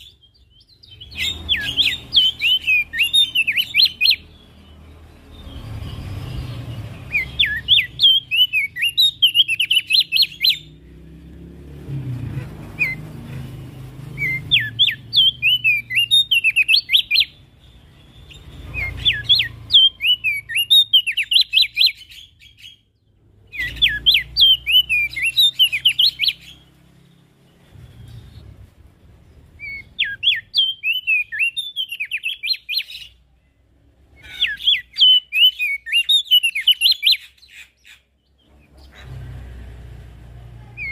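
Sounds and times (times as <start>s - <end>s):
bird twittering: 0.0s - 11.4s, 12.7s - 39.2s.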